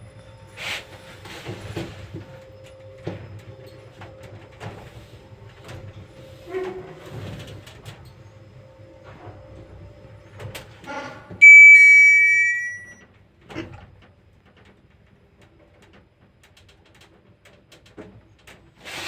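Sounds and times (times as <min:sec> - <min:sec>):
lift humming and creaking: 0:00.0 - 0:13.9
lift car clunk: 0:11.4 - 0:12.9
two-note arrival chime: 0:11.4 - 0:13.0.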